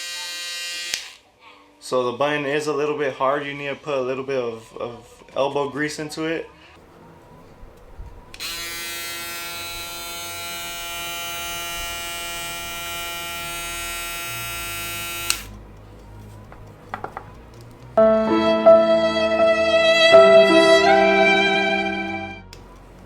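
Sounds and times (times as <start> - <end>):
electric shaver buzzing: 0.0 - 1.2, 8.4 - 15.6.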